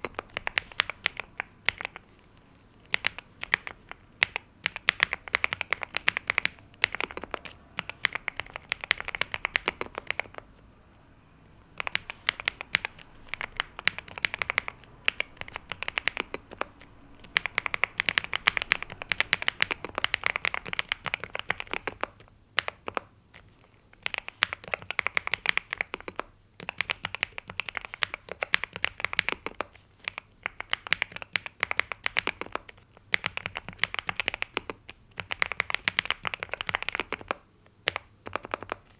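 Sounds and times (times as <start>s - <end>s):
mechanical keyboard typing: 0.0s - 2.1s, 2.8s - 10.5s, 11.7s - 38.9s.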